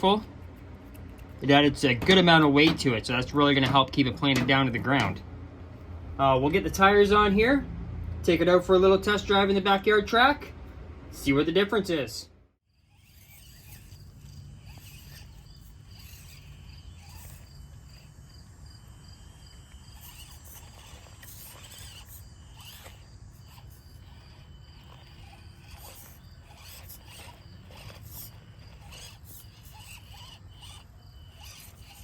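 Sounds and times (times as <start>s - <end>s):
low steady rumble: 0.0s - 32.0s
insect chirping: 12.7s - 32.0s.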